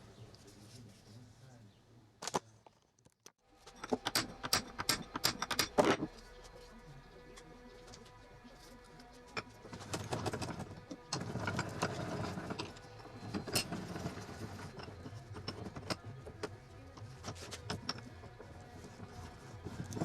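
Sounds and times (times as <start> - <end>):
metal tools clicking and knocking: 3.6 - 6.2, 9.3 - 18.4.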